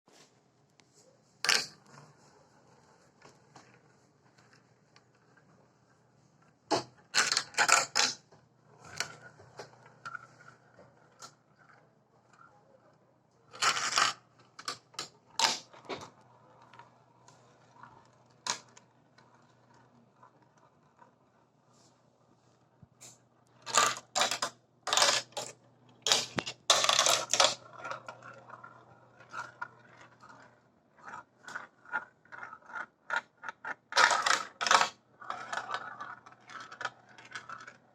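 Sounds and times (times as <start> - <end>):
marbles clattering on plastic track: 1.5 - 1.8, 6.7 - 8.2, 13.5 - 21.1, 23.5 - 37.9
marbles rolling rattle: 7.1 - 8.2, 13.5 - 21.1, 23.5 - 37.9.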